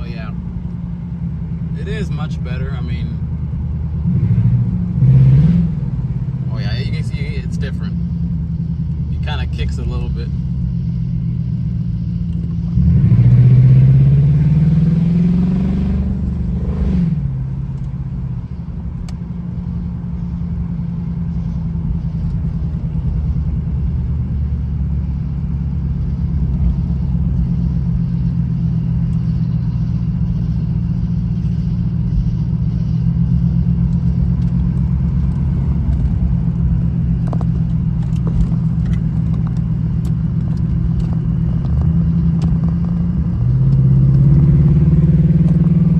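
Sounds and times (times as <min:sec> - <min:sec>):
car engine accelerating: 0:00.0 - 0:45.9.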